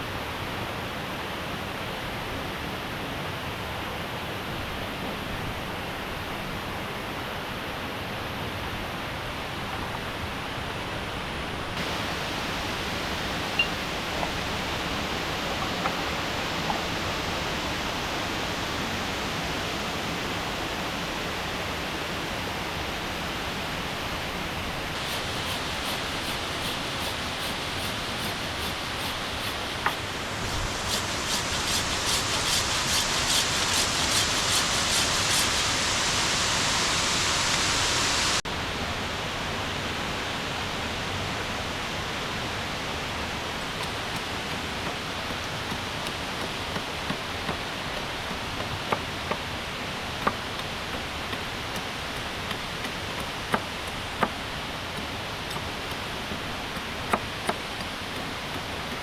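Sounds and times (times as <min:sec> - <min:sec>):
waterfall and rapids rushing: 0:00.0 - 0:59.0
rhythmic high rasping: 0:25.0 - 0:35.8.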